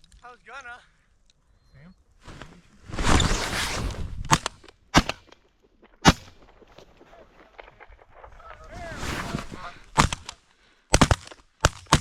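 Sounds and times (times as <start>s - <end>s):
shotgun blasts: 4.3s - 5.4s, 6.0s - 6.8s, 9.8s - 12.0s.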